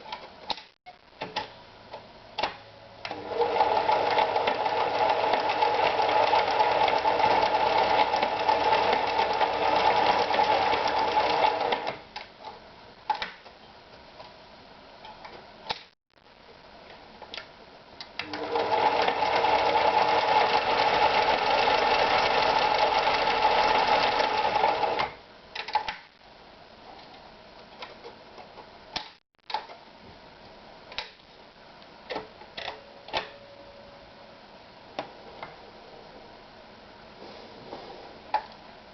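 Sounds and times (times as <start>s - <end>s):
sewing machine running: 3.1s - 11.9s, 18.2s - 25.1s.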